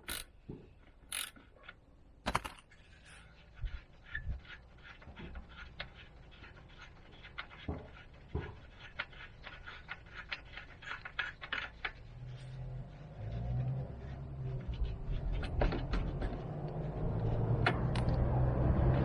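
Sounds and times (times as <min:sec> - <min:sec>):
hand tools clicking on metal: 0:00.0 - 0:00.4, 0:01.1 - 0:01.5.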